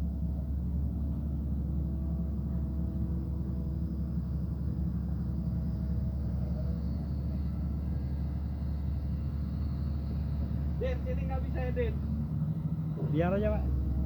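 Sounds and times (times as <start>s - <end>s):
diesel engine droning: 0.0s - 14.0s.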